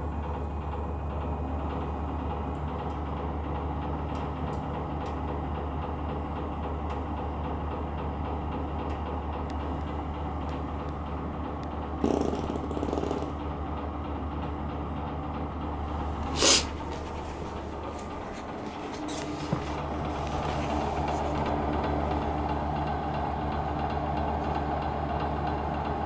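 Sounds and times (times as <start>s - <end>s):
fan heater humming: 5.6s - 26.0s.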